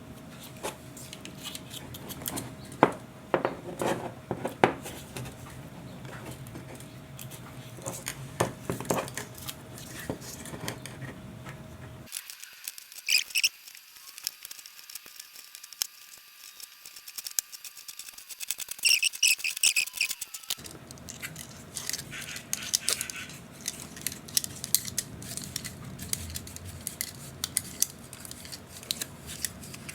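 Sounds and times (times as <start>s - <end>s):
wire being wound onto coil: 12.1s - 29.9s.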